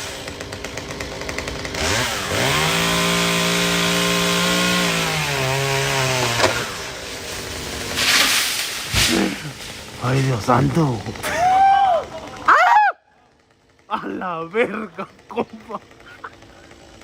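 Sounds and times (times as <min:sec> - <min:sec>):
chainsaw idling and revving: 0:00.0 - 0:17.0
sharp crack: 0:05.8 - 0:10.4.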